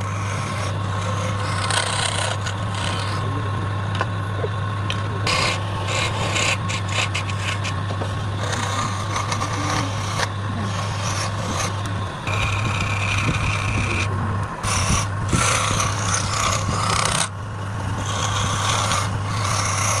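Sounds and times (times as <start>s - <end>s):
steady high whine: 0.0s - 20.0s
tool rasping on spinning wood: 0.0s - 20.0s
wood lathe humming: 0.0s - 20.0s.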